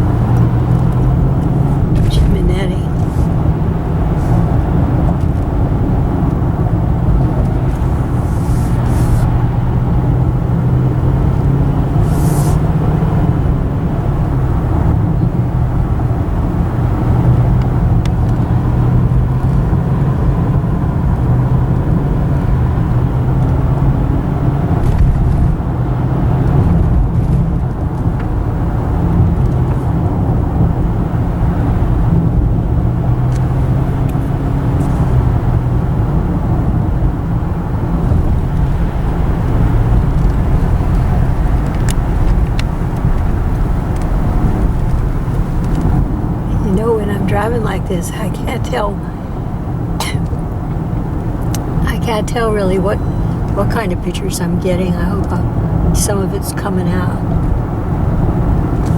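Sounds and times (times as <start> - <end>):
engine and tyre rumble: 0.0 - 58.9
passing vehicle hisses: 7.8 - 9.4, 11.9 - 12.7.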